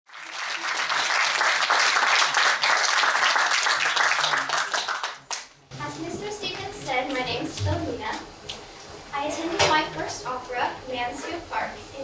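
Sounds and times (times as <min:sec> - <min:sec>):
audience applauding: 0:00.1 - 0:05.6.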